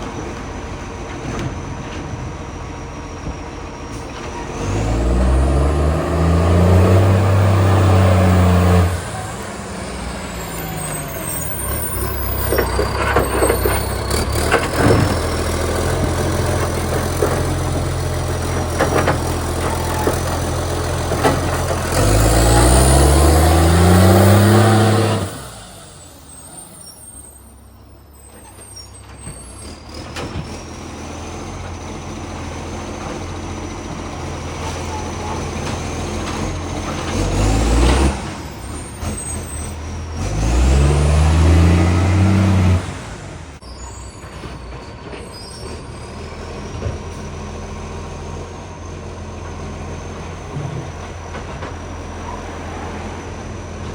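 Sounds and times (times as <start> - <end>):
engine knocks and clanks: 0.0 - 53.9
truck engine revving loudly: 4.4 - 26.8, 29.9 - 43.6.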